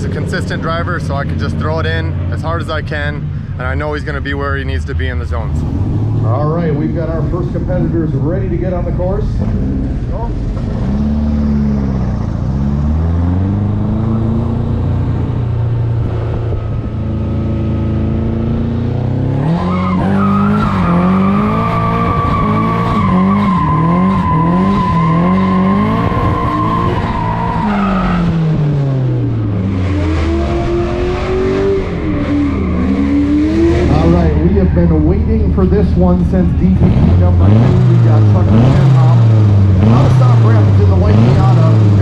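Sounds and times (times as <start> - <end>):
car engines revving: 0.0 - 42.0.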